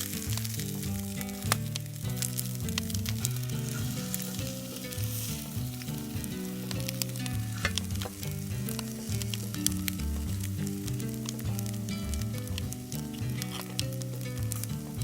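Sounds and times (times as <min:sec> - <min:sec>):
food sizzling in a pan: 0:00.0 - 0:10.0
background music with bass line: 0:00.0 - 0:15.0.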